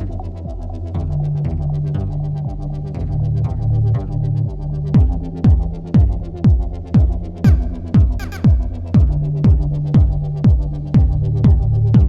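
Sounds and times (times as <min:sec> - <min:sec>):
electronic dance music: 0:07.5 - 0:08.8
synthesizer bass line: 0:07.5 - 0:09.4.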